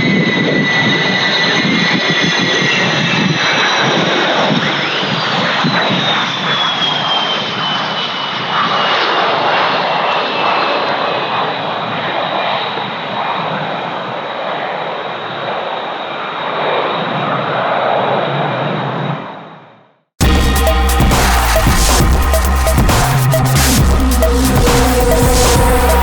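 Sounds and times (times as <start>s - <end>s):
high jet whine: 20.2s - 26.0s.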